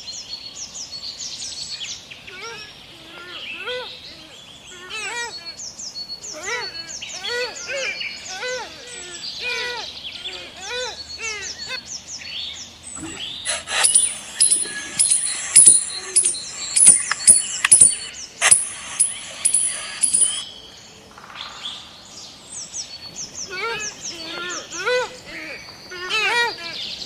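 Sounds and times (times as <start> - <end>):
birds chirping: 0.0 - 27.0
loud sharp clicks: 13.5 - 20.4.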